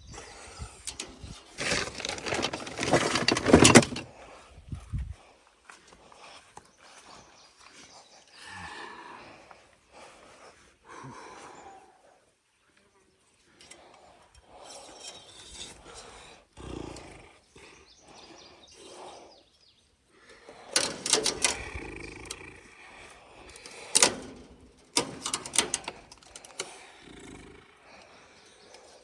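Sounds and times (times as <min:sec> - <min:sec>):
rustling handling noise: 0:01.5 - 0:04.1.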